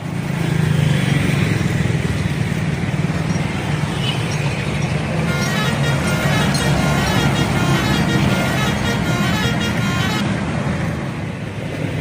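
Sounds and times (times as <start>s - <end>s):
bus engine running: 0.0s - 12.0s
multi-tone horn melody: 5.2s - 10.4s.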